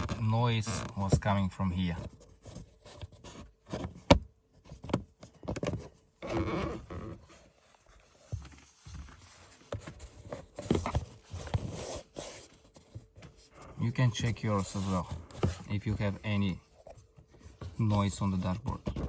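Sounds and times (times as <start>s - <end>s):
plastic trim knocks and scraping: 12.8s - 16.2s, 16.8s - 19.0s.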